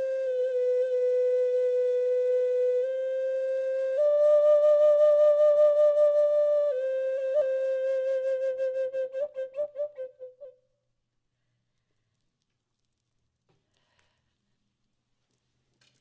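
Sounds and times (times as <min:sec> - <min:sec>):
solo flute slow melody: 0:00.0 - 0:10.6.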